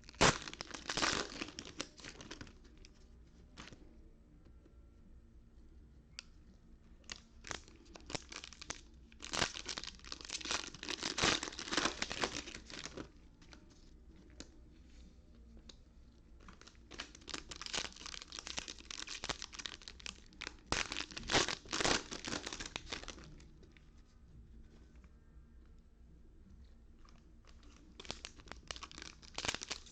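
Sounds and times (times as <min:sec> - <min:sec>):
card pack wrappers tearing: 0:00.0 - 0:02.5, 0:07.1 - 0:13.0, 0:16.6 - 0:23.3, 0:28.0 - 0:29.9.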